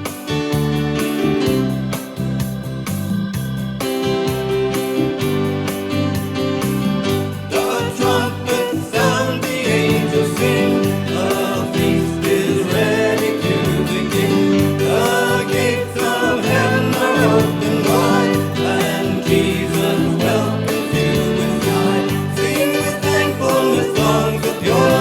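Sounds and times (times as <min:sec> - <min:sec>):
organ chords: 0:00.0 - 0:25.0
choir singing a hymn: 0:07.3 - 0:25.0.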